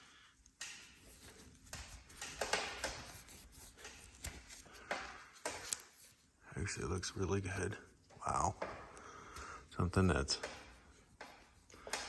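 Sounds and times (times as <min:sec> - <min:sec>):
hands scraping and rubbing: 0:00.6 - 0:08.0.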